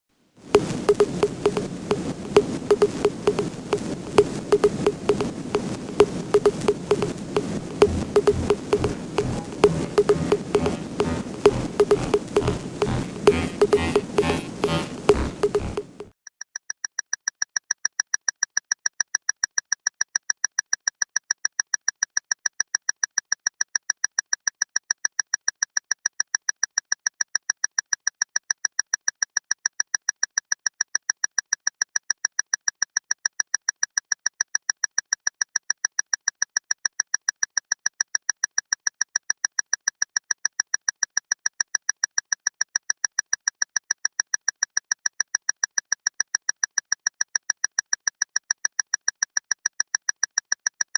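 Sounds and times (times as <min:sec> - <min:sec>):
clock ticking rapidly: 0:00.6 - 0:16.1.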